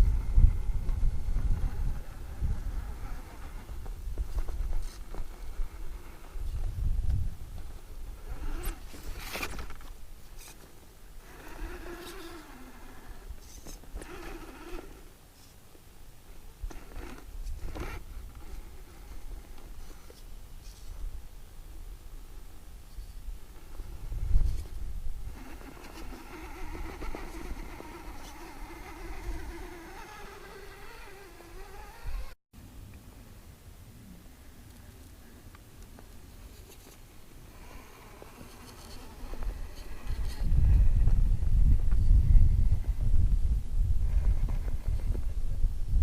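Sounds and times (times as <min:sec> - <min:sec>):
toy car motor whining: 0:08.2 - 0:09.7, 0:11.2 - 0:15.1, 0:25.3 - 0:32.4, 0:37.5 - 0:40.8.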